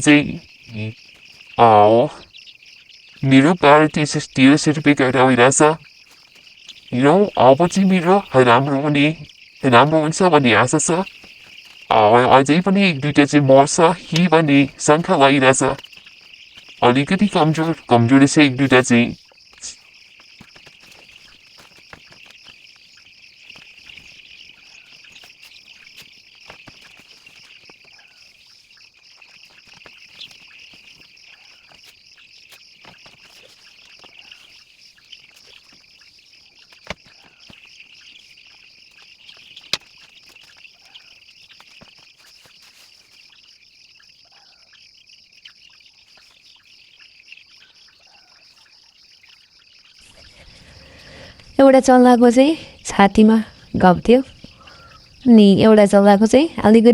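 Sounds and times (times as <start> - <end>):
chicks peeping: 0.0 - 56.9.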